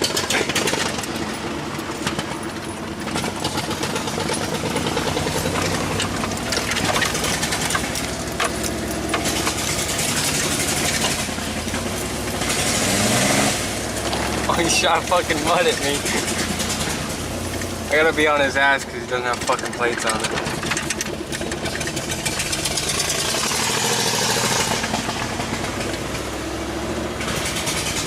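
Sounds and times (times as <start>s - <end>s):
rattling clicks: 0.0s - 12.2s, 19.1s - 23.9s
rough-running car engine: 0.0s - 28.0s.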